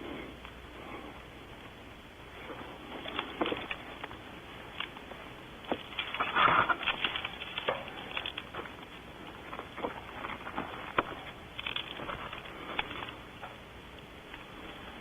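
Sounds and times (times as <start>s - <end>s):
scratchy rustles: 5.7s - 13.3s.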